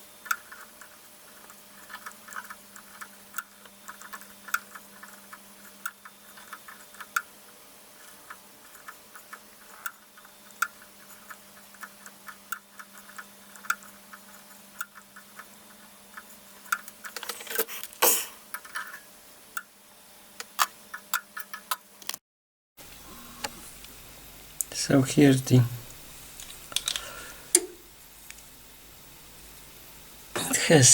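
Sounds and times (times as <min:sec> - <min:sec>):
steady low hum: 0:22.8 - 0:30.9.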